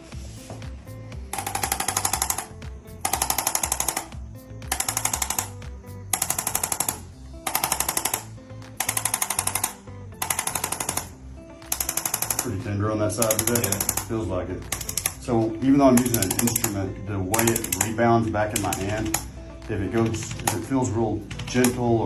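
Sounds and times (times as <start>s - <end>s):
background music: 0.0s - 22.0s
rapid taps of adjusting instrument: 13.2s - 21.9s.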